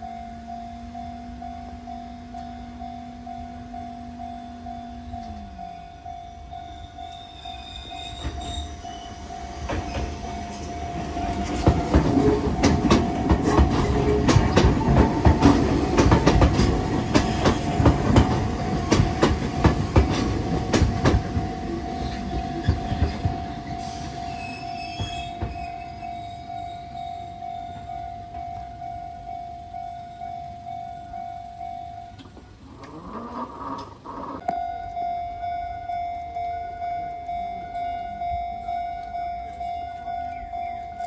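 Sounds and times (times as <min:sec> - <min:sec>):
crossing warning alarm tone: 0:00.0 - 0:33.4, 0:34.3 - 0:41.0
train rumbling past: 0:00.0 - 0:41.0
high wheel squeals: 0:06.2 - 0:11.6, 0:21.8 - 0:27.0.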